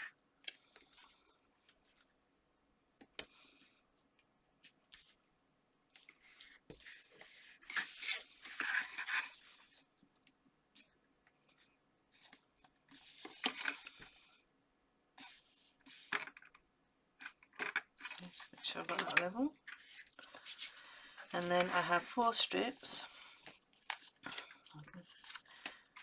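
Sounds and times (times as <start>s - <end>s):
paper rustling and rubbing: 6.0s - 9.8s, 12.2s - 14.1s, 15.2s - 16.3s, 18.0s - 26.0s.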